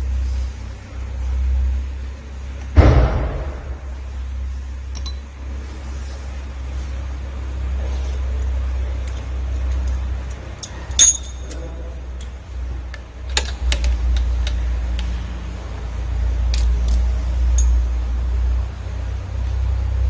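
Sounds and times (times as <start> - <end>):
steady low rumble: 0.0 - 20.0
metallic clicks and clinks: 4.9 - 5.3, 9.0 - 14.6, 16.5 - 17.9
loud ringing metal clink: 10.6 - 11.9, 16.5 - 17.9.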